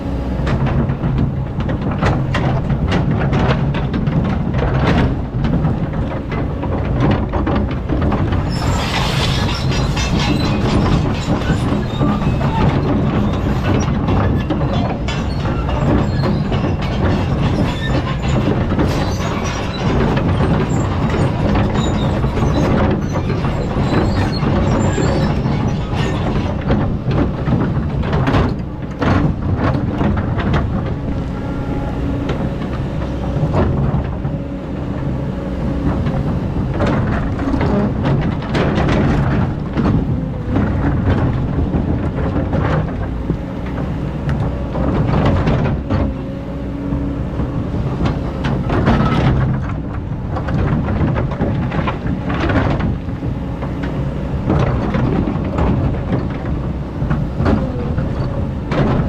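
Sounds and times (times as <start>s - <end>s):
metallic clanks and knocks: 0.0s - 46.4s
diesel engine running: 0.0s - 59.0s.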